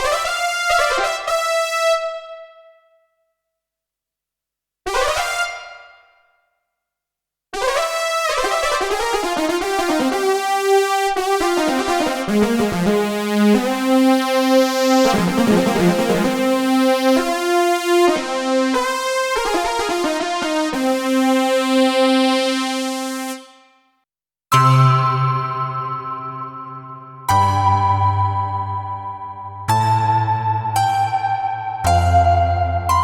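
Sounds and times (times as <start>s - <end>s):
synthesizer melody over chords: 9.2s - 23.6s, 27.3s - 33.0s.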